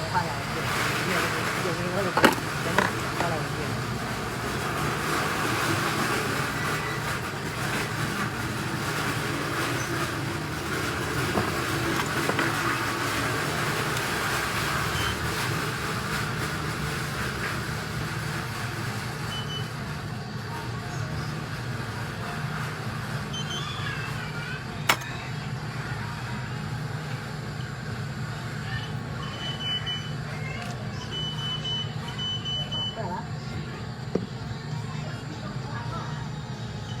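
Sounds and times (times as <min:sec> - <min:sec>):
hot-air rework station blowing: 0:00.0 - 0:20.6, 0:24.2 - 0:28.4.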